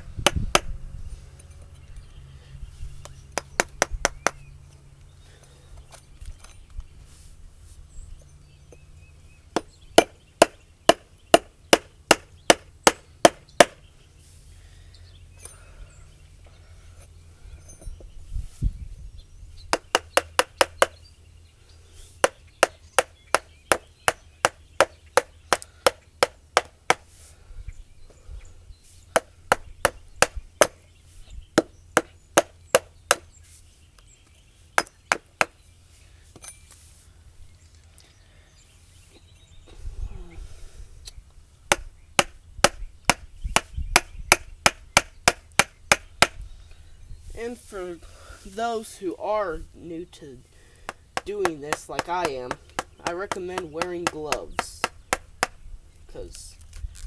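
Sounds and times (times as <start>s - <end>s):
mallet striking chisel into wood: 0.2s - 0.7s, 9.6s - 13.8s, 19.7s - 21.0s, 29.2s - 30.8s, 41.7s - 46.4s, 50.9s - 55.6s.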